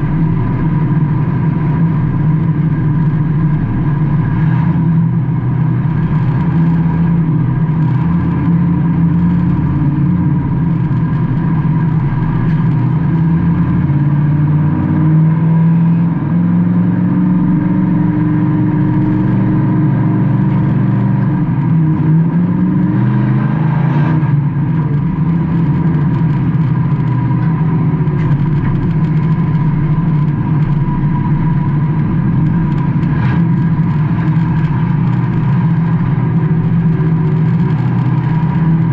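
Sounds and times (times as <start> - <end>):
steady high whine: 0.0 - 14.9, 17.0 - 38.9
race car engine revving: 0.0 - 38.9.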